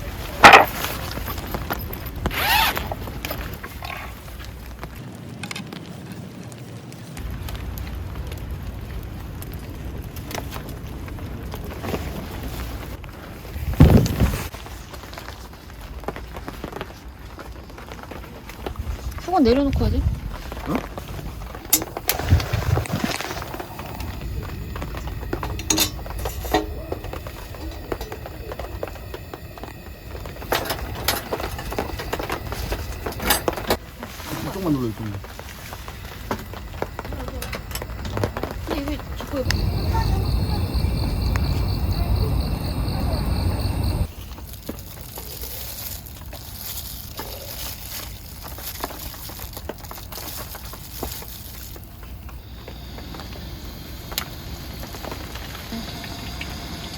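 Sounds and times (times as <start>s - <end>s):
oil crackling and popping: 0.0s - 41.8s, 44.0s - 56.9s.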